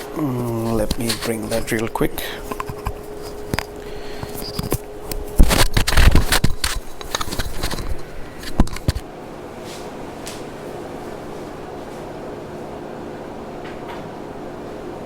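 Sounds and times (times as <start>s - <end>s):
objects being handled: 0.0s - 9.0s
thumps and rustling: 0.2s - 9.0s.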